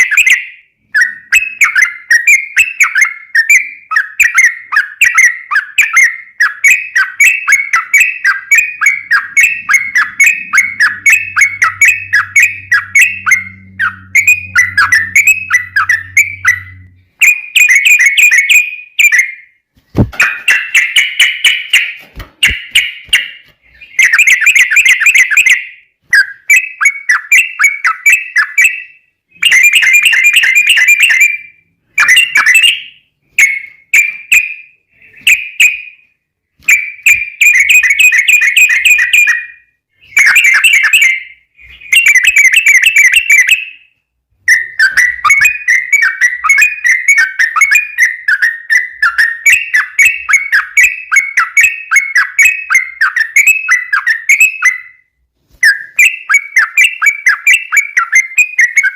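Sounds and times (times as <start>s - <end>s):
bulbul singing: 0.0s - 36.0s, 44.5s - 55.0s.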